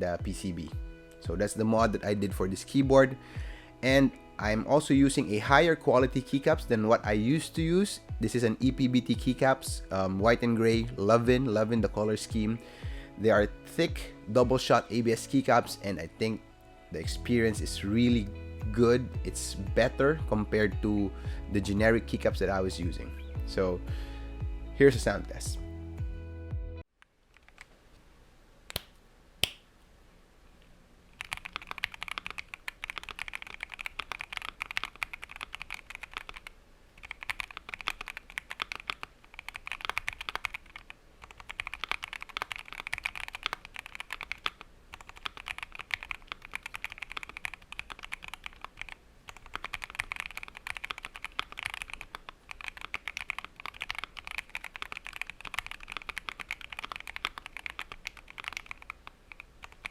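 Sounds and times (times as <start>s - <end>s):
mechanical keyboard typing: 31.2s - 59.9s.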